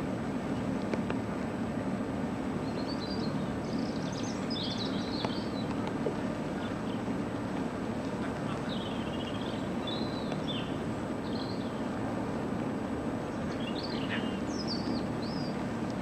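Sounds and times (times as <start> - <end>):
low background rumble: 0.0 - 16.0
small birds chirping: 2.5 - 12.1, 13.2 - 15.8.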